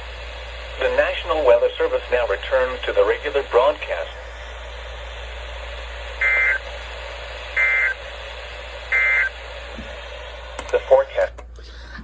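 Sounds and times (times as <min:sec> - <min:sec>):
radio hiss: 0:00.0 - 0:12.0
short data bursts: 0:06.2 - 0:06.7, 0:07.6 - 0:08.0, 0:08.9 - 0:09.4.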